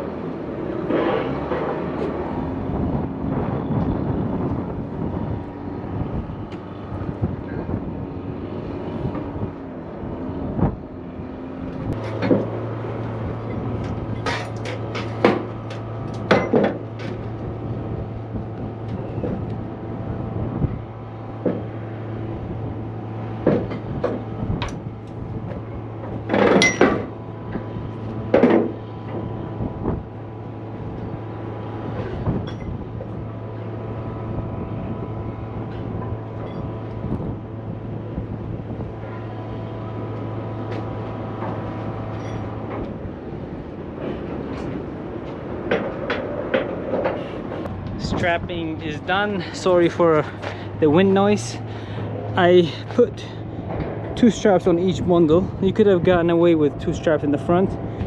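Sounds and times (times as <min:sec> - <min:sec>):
steady engine hum: 0:00.0 - 0:58.0
wind buffeting microphone: 0:00.0 - 0:58.0
metallic clanks from straps and winches: 0:13.5 - 0:17.4, 0:26.0 - 0:27.1.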